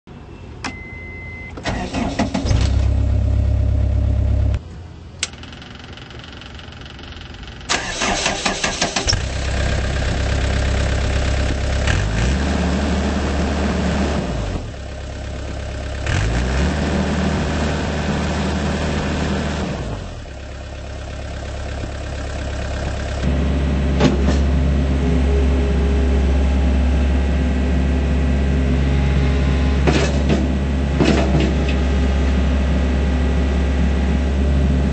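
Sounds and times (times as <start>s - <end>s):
short beep: 0.3s - 1.6s
diesel engine running: 1.5s - 34.9s.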